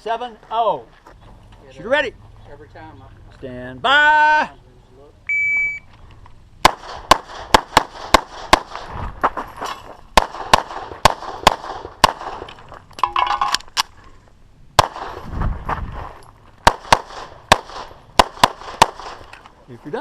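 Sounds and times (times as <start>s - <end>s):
pistol shots: 6.6s - 8.9s, 10.2s - 12.5s, 14.8s - 15.2s, 16.6s - 19.3s.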